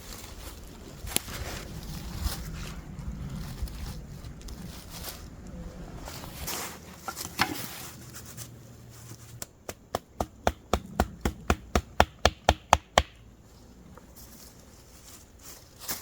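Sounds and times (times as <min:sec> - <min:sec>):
rapid hammering: 0:09.7 - 0:13.2.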